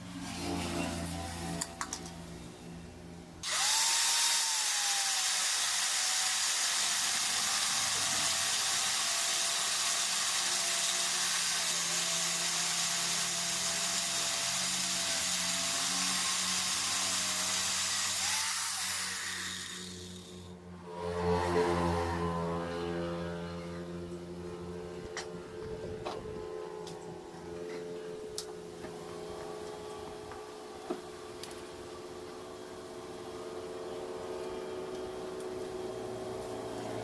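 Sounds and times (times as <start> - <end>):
angle grinder grinding metal: 3.4 - 23.4.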